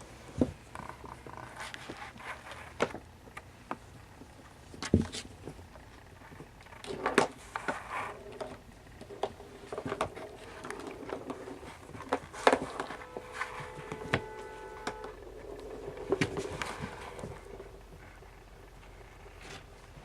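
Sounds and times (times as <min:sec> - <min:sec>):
kittens knocking and scraping: 0:04.7 - 0:20.0
faint multi-pitch tone: 0:12.4 - 0:17.9.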